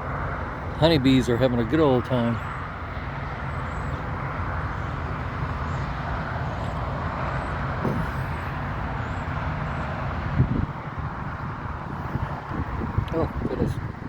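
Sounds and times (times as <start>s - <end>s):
road traffic hum: 0.0s - 14.0s
wind rumbling on microphone: 5.4s - 14.0s.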